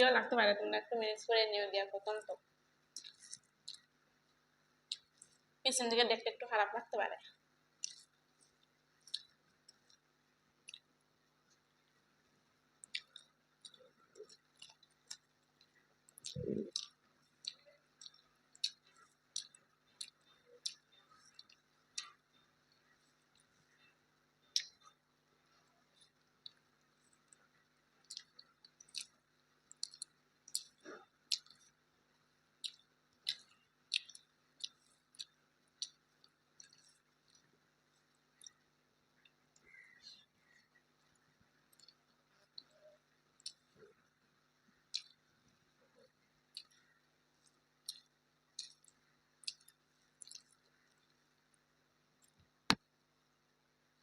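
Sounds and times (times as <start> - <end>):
person chewing food: 2.8 - 4.0, 4.8 - 5.5, 7.7 - 53.3
soft wet mouth clicks: 16.1 - 22.2, 24.6 - 24.8, 28.1 - 31.7, 32.6 - 36.0, 47.4 - 50.7.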